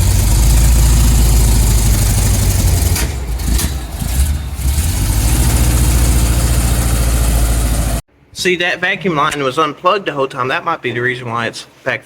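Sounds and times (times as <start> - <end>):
truck engine running: 0.0 - 8.0.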